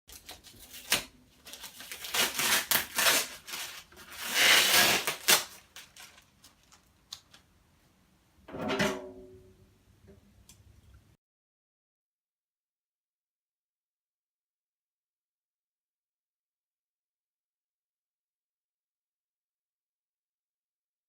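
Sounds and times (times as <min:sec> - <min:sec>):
packaging scraping and rustling: 0:00.1 - 0:07.4.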